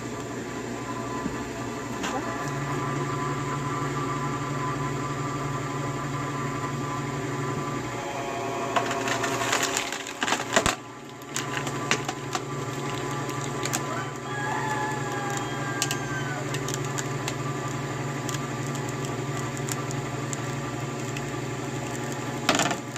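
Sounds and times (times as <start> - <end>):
machine humming: 0.0 - 22.9
wood cracking and splitting: 8.8 - 22.9.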